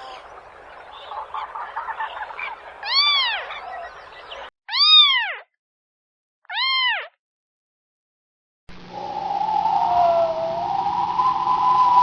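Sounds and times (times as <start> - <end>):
cat meowing: 4.7 - 5.4.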